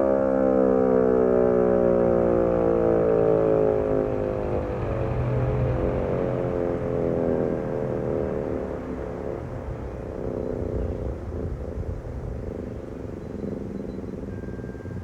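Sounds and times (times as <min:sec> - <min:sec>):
warning siren winding down: 0:00.0 - 0:10.7
steady low rumble: 0:02.7 - 0:14.4.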